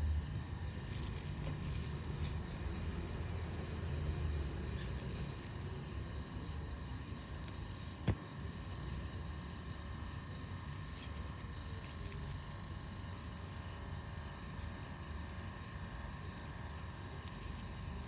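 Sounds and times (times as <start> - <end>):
chain links jingling: 0.7 - 3.2, 3.9 - 5.8, 10.6 - 18.0.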